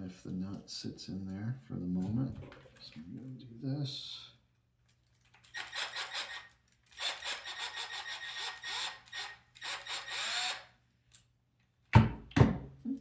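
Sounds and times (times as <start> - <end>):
electric screwdriver motor: 5.6 - 10.7.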